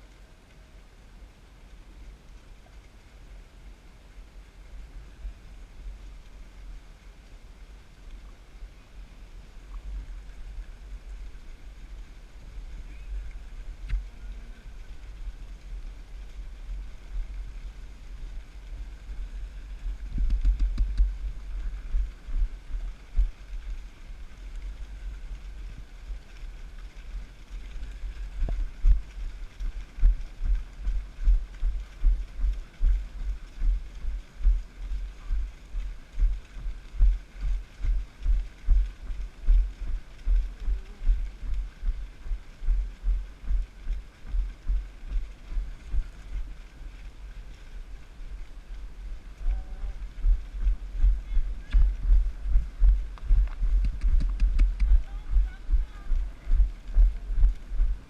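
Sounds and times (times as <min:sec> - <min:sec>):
low wind on microphone: 0:00.0 - 0:58.0
microphone handling rumble: 0:12.8 - 0:23.8, 0:27.1 - 0:46.6, 0:48.2 - 0:58.0
camera bumping on horseback: 0:20.2 - 0:21.3, 0:51.0 - 0:55.1.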